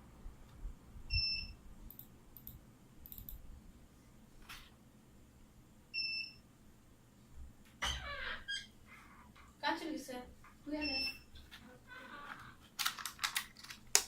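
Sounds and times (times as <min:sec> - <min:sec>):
short electronic beeps: 0:01.1 - 0:01.6.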